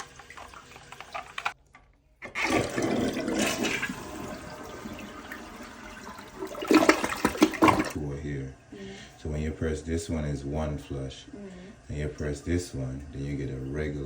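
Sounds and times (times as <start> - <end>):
toilet flushing: 0.0 - 1.6, 2.2 - 14.0.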